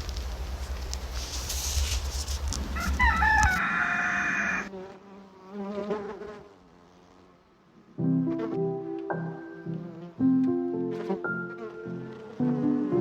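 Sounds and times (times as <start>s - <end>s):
crackling: 0.0s - 3.6s
loud crowing call: 2.7s - 4.7s
wavering insect-like buzz: 8.0s - 13.0s.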